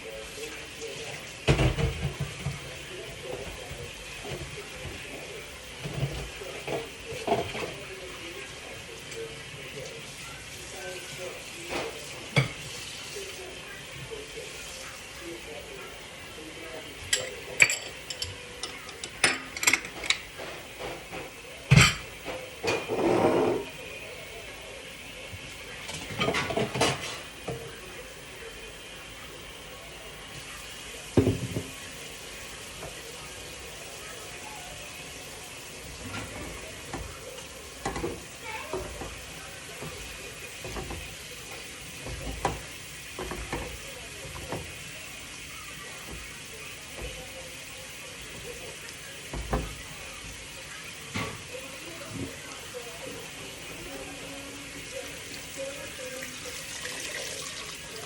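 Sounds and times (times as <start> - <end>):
soup sizzling in a pot: 0.0 - 58.0
kitchen items knocking and clinking: 31.2 - 31.7.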